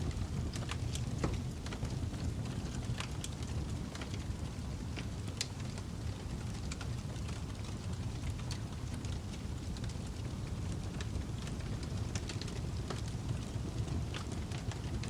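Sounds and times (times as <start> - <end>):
campfire pops and snaps: 0.0 - 15.0
low rumble of burning fire: 0.0 - 15.0.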